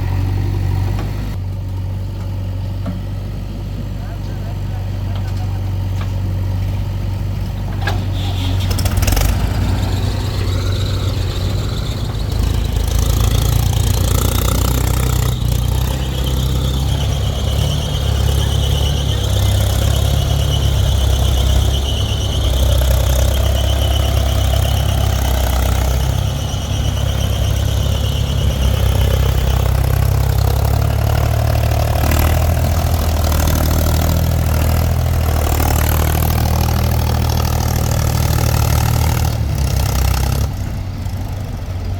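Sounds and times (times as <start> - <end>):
heavy diesel machinery running: 0.0 - 41.9
high steady squeal: 8.1 - 40.5.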